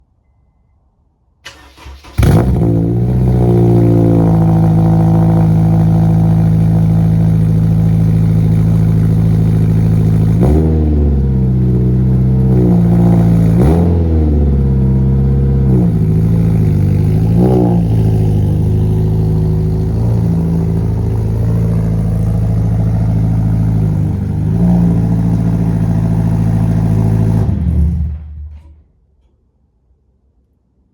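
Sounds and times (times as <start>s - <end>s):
engine starter cranking: 1.4s - 2.6s
car engine idling and revving: 1.5s - 28.8s.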